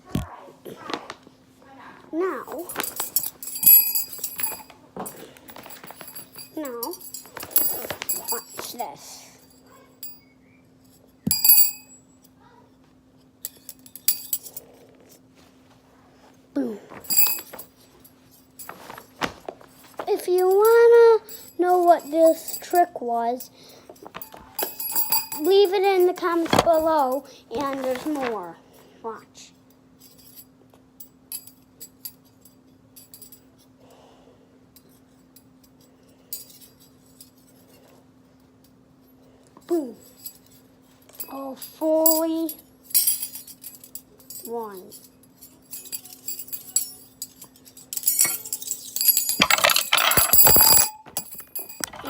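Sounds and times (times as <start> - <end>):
steady low hum: 0.0 - 52.0
light metallic clinks: 2.5 - 12.4, 13.4 - 14.7, 17.0 - 19.1, 19.7 - 22.8, 23.4 - 27.2, 34.8 - 52.0
sharp ringing metal clank: 11.3 - 12.1
soft rustle: 27.5 - 28.6.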